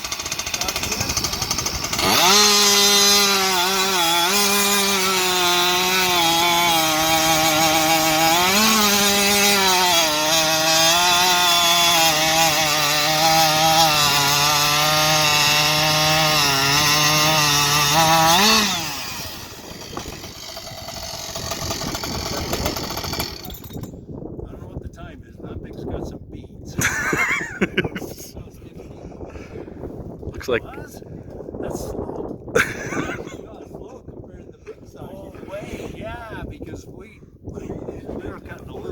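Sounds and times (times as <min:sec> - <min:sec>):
chainsaw cutting wood: 0:00.0 - 0:23.9.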